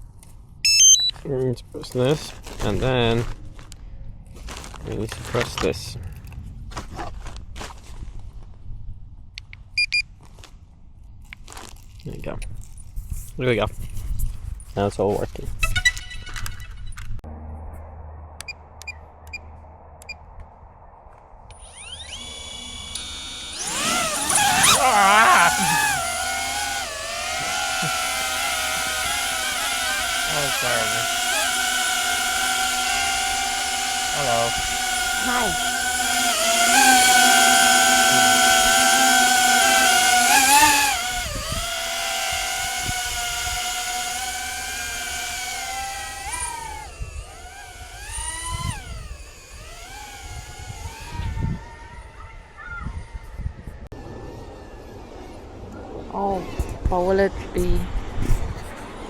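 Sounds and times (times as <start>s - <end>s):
drone motors whining: 0.7s - 1.1s, 21.5s - 52.6s.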